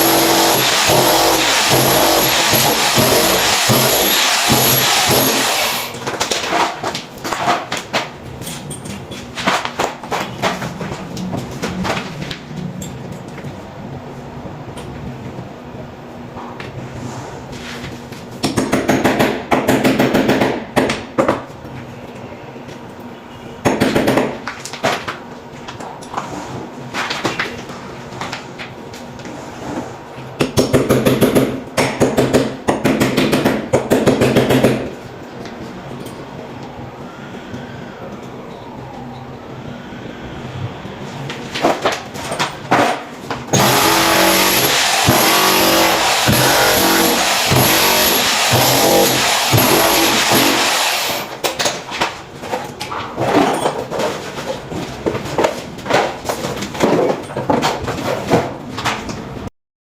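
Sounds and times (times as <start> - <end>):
rapid hammer blows: 0.0 - 6.2, 42.7 - 51.4.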